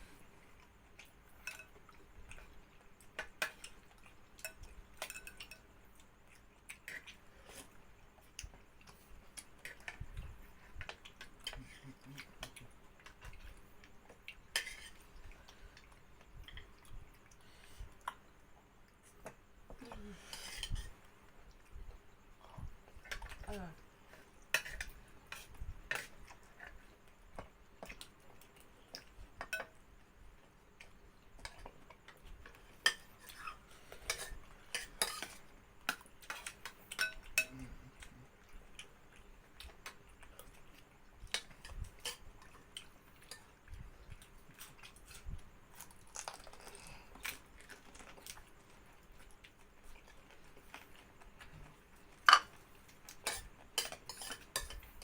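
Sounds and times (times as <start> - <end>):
cutlery clinking on plates: 4.4 - 5.7, 24.6 - 26.2, 29.4 - 29.8, 32.8 - 37.6, 52.2 - 54.9.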